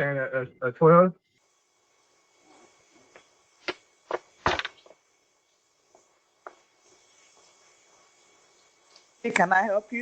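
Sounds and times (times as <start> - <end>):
faint steady hiss: 0.0 - 10.0.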